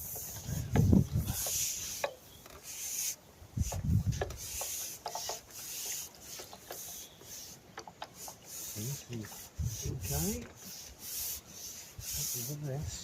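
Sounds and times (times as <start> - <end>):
fishing tackle rubbing and scraping: 0.0 - 13.0.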